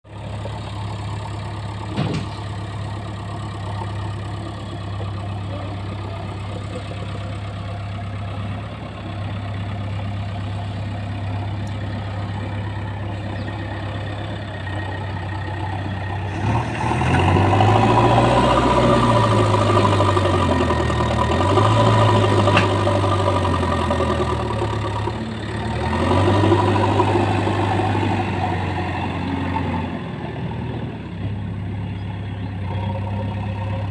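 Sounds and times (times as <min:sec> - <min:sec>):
diesel engine idling: 0:00.0 - 0:33.9.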